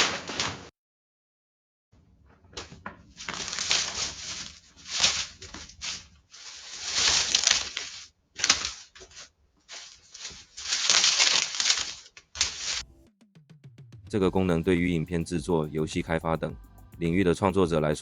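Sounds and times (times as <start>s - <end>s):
noisy irregular sound effects: 12.8s - 18.0s.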